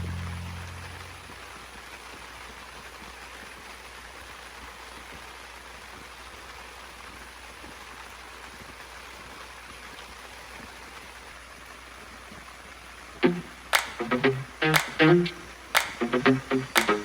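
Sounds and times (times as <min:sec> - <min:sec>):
sudden loud sound: 0:00.0 - 0:01.4
steady rain falling: 0:00.0 - 0:17.0.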